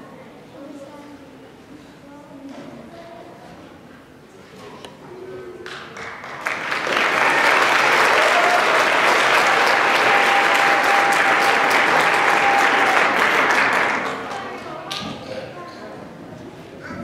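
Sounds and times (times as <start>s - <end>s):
audience applauding: 5.6s - 15.0s.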